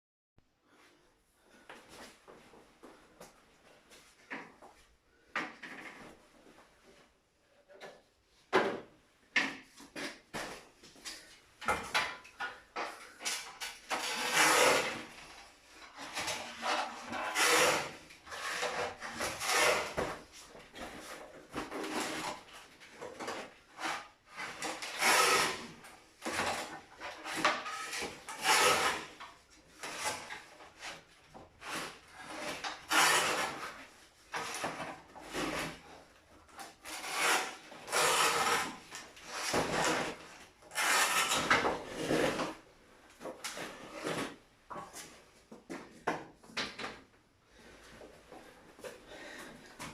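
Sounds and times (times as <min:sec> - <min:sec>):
parquet cutter crunching wood: 0:14.0 - 0:15.0, 0:17.3 - 0:20.0, 0:24.6 - 0:26.7, 0:27.8 - 0:29.1, 0:31.6 - 0:33.6, 0:36.8 - 0:40.1.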